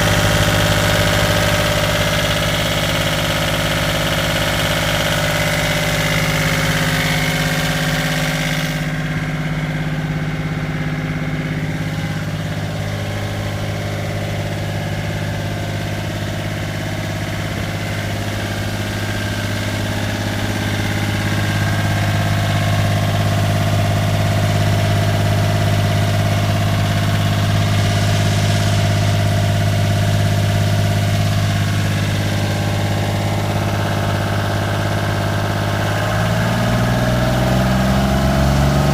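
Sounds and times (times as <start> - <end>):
marine diesel engine running: 0.0 - 38.9.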